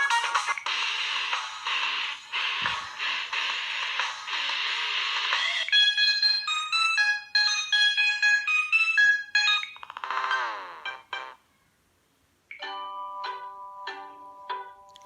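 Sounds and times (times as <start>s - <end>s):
ringtone with bright high notes: 0.0s - 11.4s.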